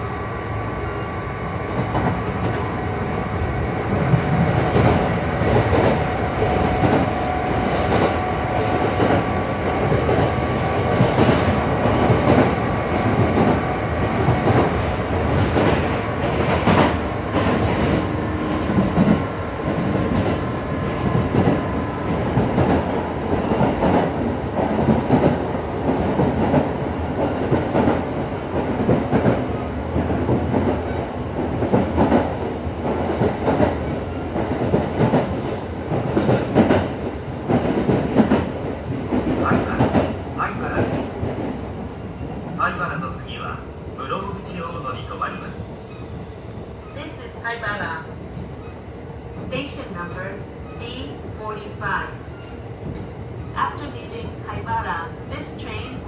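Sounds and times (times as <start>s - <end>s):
clickety-clack of rail joints: 1.7s - 2.8s, 4.0s - 42.8s, 52.4s - 53.9s.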